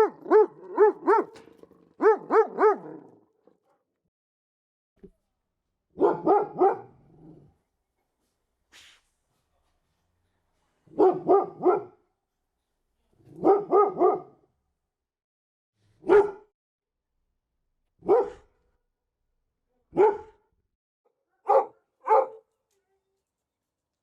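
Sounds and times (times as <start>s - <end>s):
dog barking: 0.0s - 1.4s, 2.0s - 3.2s, 6.0s - 7.4s, 10.9s - 12.0s, 13.3s - 14.4s, 16.0s - 16.5s, 18.0s - 18.6s, 19.9s - 20.5s, 21.4s - 22.5s.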